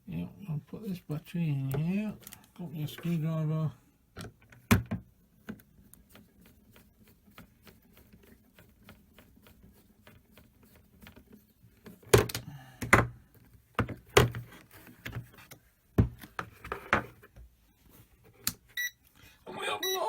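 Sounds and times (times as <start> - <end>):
plastic knocks and clacks: 4.2 - 17.5.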